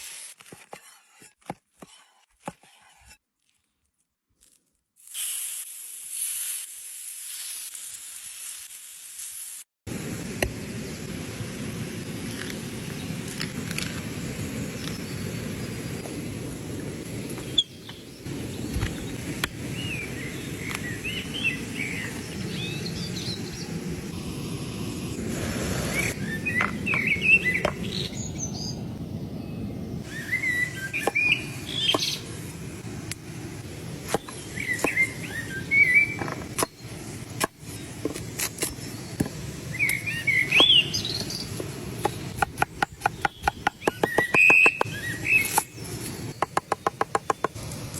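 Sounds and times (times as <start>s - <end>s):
small birds chirping: 25.9s - 32.3s, 34.1s - 37.0s, 38.6s - 47.6s.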